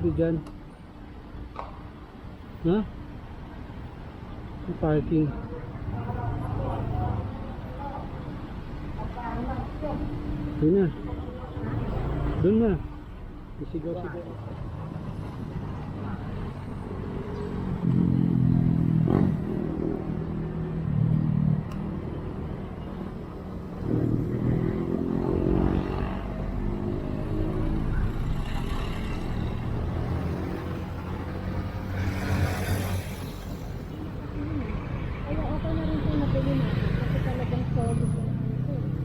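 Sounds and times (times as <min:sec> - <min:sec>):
low rumble of road noise: 0:00.0 - 0:39.0.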